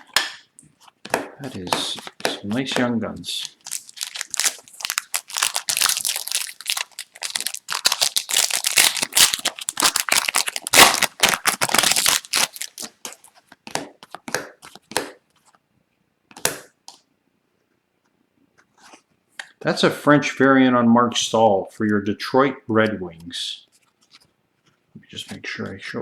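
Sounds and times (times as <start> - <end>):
wrapper tearing and crinkling: 3.4 - 13.3.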